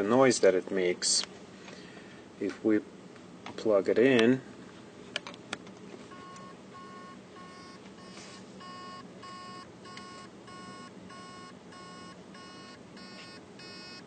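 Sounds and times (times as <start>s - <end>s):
hard drive beeping: 6.1s - 14.0s.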